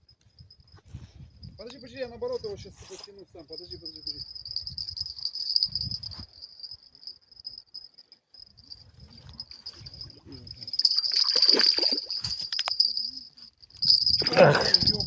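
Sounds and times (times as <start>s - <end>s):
crickets chirring: 0.0s - 0.8s, 3.2s - 15.0s
fish splashing in water: 10.7s - 12.4s.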